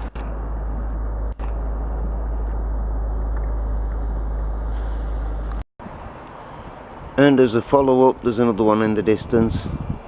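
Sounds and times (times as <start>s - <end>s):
low outdoor rumble: 0.0s - 7.7s.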